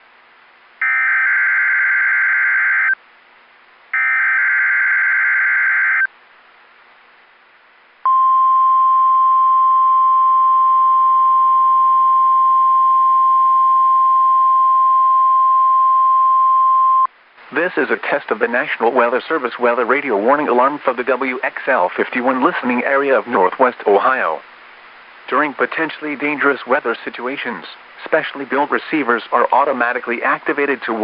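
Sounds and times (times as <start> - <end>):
steady warning alarm tone: 0.8 - 3.0, 4.0 - 6.1
warbling data bursts: 4.0 - 6.1.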